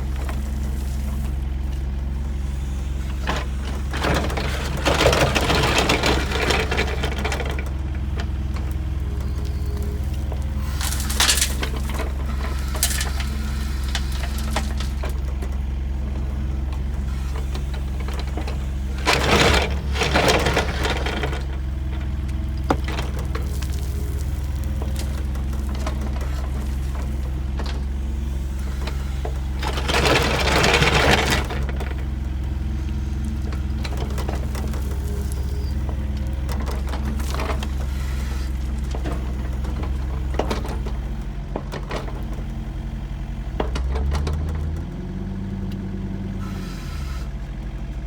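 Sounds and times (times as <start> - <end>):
diesel engine running: 0.0 - 48.0.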